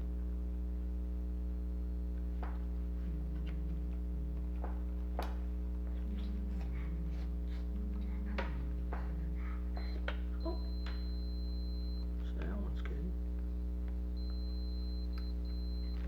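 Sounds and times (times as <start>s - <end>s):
low electrical hum: 0.0s - 16.0s
faint low stepping tones: 13.1s - 16.0s.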